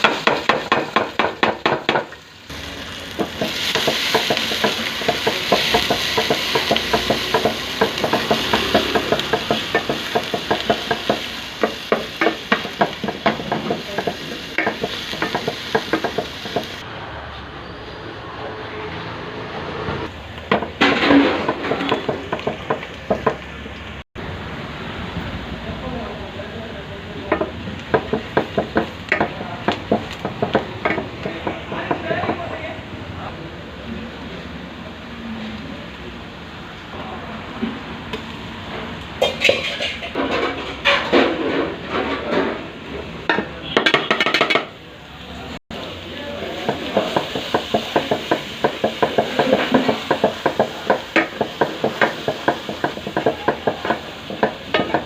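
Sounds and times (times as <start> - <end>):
chicken sizzling in a pan: 0.0 - 16.8, 45.8 - 55.0
utensil scraping a pan: 39.2 - 42.7.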